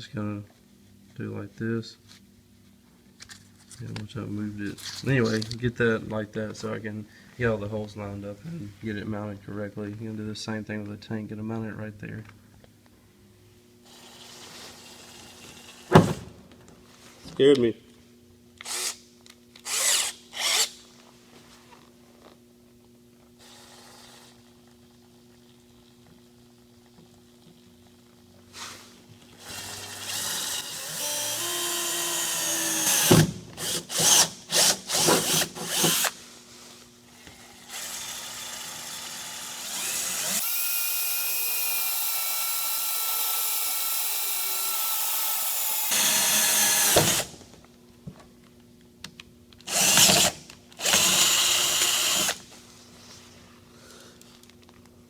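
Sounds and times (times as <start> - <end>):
power drill boring through metal: 29.4 - 36.1, 37.5 - 47.4, 49.7 - 52.4.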